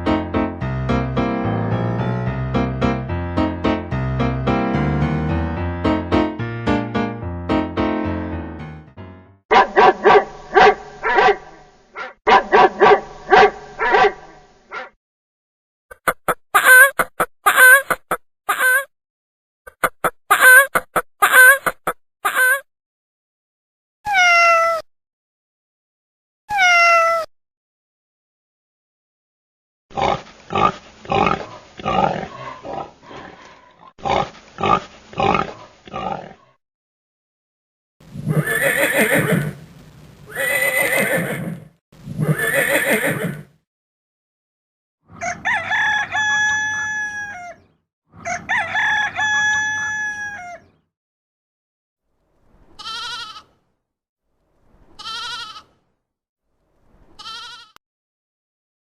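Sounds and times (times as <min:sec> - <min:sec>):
piano notes: 0:00.0 - 0:09.4
dog barking: 0:09.5 - 0:15.0
pig grunting: 0:30.0 - 0:36.5.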